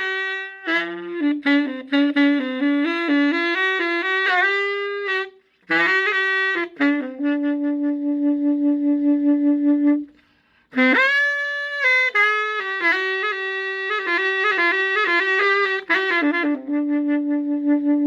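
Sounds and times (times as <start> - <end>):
solo wind instrument melody: 0.0 - 18.0.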